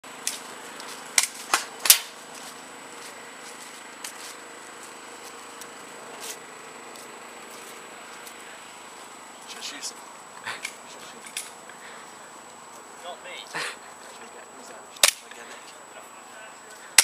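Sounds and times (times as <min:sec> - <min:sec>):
faint hum: 0:00.0 - 0:17.0
airsoft gun shots: 0:01.2 - 0:02.2, 0:15.0 - 0:15.3.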